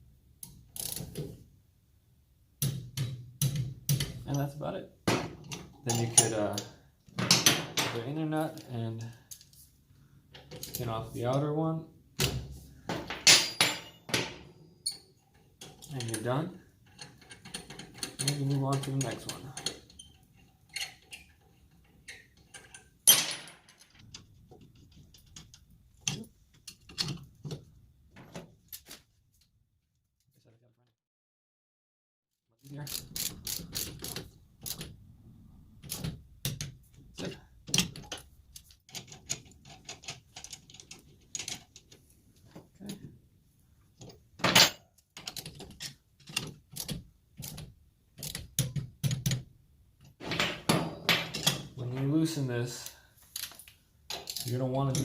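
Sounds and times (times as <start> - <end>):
metal hardware clinking: 5.1 - 8.7, 13.0 - 24.3, 50.2 - 51.8.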